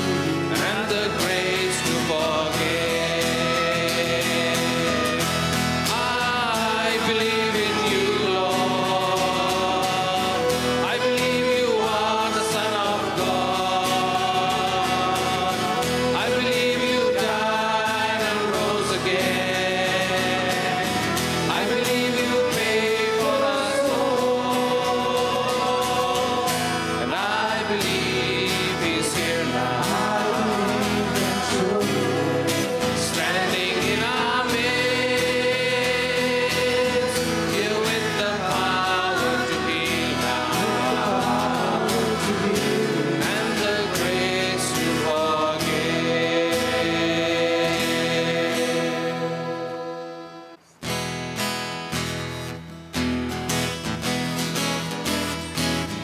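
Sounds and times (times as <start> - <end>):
group of voices singing: 0.0 - 50.6
instrumental accompaniment: 0.0 - 51.6.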